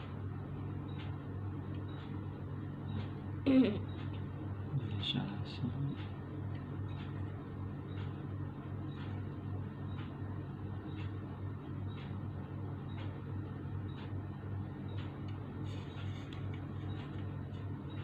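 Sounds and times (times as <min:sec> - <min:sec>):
steady low hum: 0:00.0 - 0:18.0
faint regular ticking: 0:05.0 - 0:18.0.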